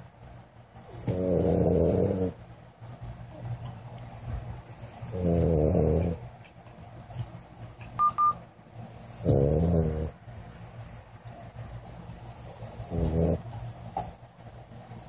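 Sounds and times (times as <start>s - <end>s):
person snoring: 9.1s - 10.1s.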